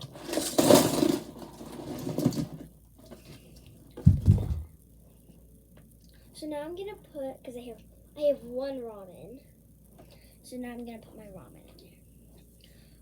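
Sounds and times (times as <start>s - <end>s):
fidget toys rustling and clattering: 0.0s - 4.6s
dull thump: 4.0s - 4.7s.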